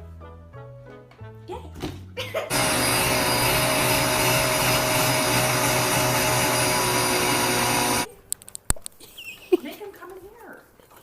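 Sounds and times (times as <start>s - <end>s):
electric motor whining: 2.5s - 8.1s.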